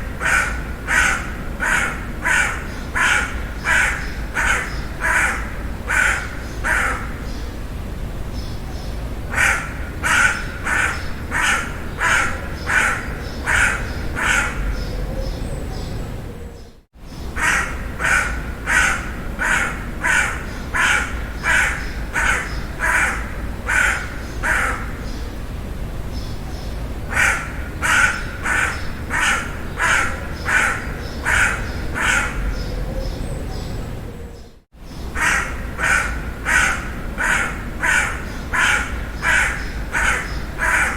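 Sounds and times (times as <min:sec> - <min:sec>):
crow cawing: 0:00.0 - 0:07.3, 0:09.3 - 0:14.9, 0:17.4 - 0:25.1, 0:27.1 - 0:32.6, 0:35.1 - 0:40.9.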